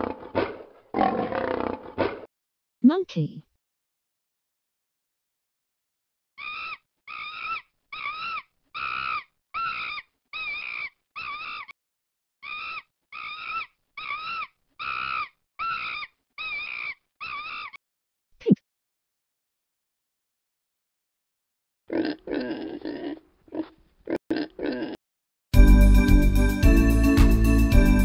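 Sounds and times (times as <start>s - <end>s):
high-pitched animal calls: 6.4s - 11.8s, 12.4s - 17.8s.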